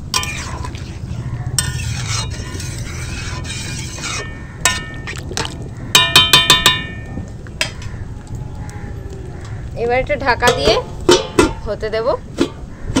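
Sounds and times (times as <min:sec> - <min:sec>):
spoon stirring in metal pot: 0:00.0 - 0:07.0.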